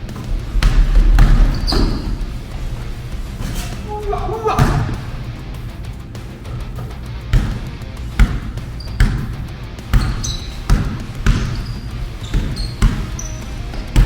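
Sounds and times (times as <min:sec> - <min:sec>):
basketball bouncing on court: 0:00.0 - 0:02.9, 0:03.5 - 0:14.0
sneaker squeaks on floor: 0:00.6 - 0:02.3, 0:03.4 - 0:05.0, 0:08.7 - 0:14.0.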